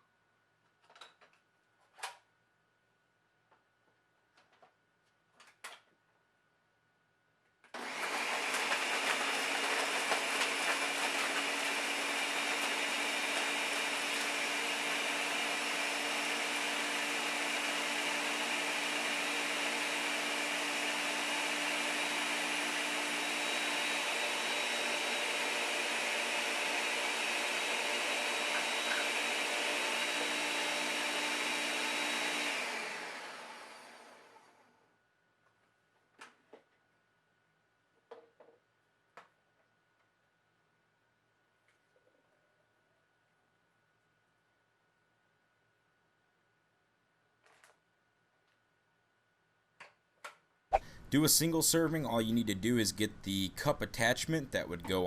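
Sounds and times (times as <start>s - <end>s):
blender motor running: 7.8s - 34.7s.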